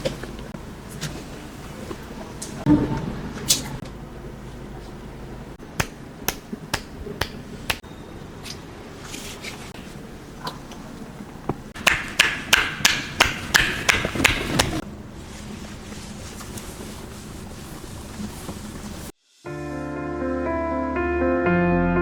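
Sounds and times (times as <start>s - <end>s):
hand strikes on head: 5.8s - 7.8s.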